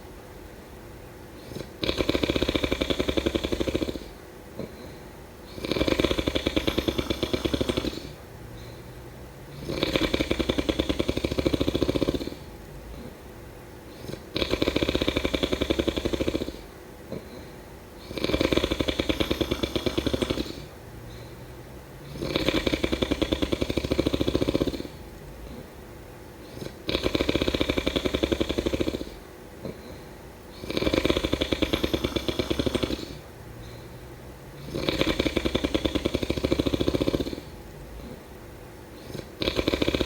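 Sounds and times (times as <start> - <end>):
person snoring: 1.4 - 8.8, 9.5 - 13.2, 13.9 - 21.4, 22.0 - 25.8, 26.4 - 38.2, 39.0 - 40.0.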